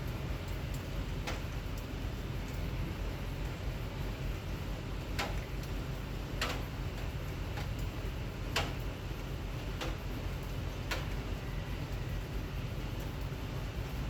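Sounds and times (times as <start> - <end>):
rain: 0.0 - 14.0.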